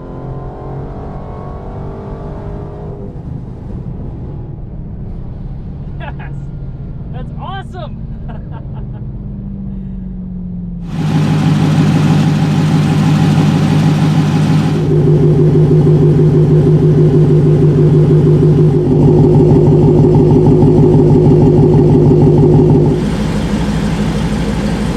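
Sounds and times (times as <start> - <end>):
supercharged car engine running: 10.8 - 24.9.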